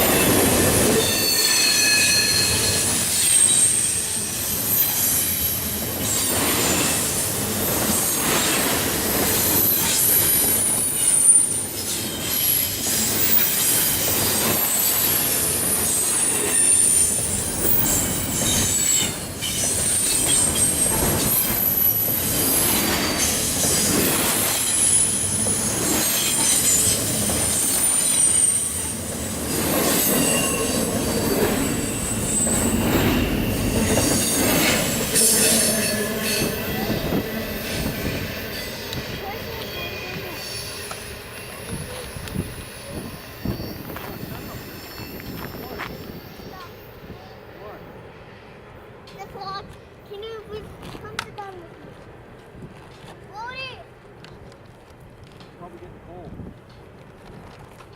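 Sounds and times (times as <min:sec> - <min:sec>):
train wheels clattering on rails: 0:00.0 - 0:46.8
high-pitched wheel squeal: 0:01.0 - 0:07.0, 0:09.8 - 0:23.8, 0:24.6 - 0:28.9, 0:29.9 - 0:38.8, 0:39.7 - 0:46.8.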